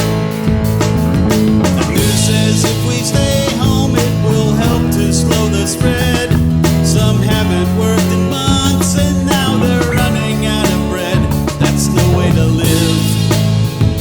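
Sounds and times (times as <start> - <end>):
rock song instrumental: 0.0 - 14.0.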